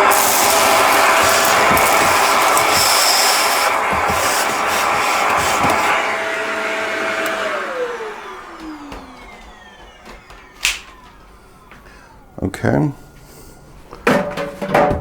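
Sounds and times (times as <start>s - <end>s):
vacuum cleaner running: 0.0s - 14.7s
sharp click: 10.6s - 10.9s.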